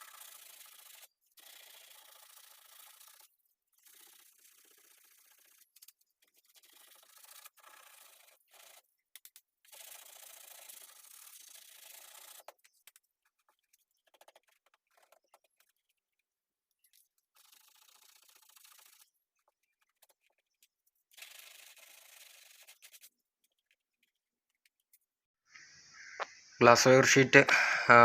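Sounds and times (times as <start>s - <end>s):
hand sanding with sandpaper: 0.0s - 8.9s, 9.6s - 16.0s, 17.3s - 24.2s.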